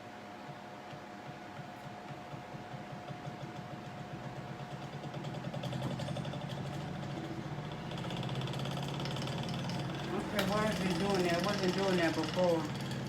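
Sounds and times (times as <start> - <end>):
fast rattling vibration: 2.3 - 13.0
grinder wheel spinning: 2.8 - 13.0.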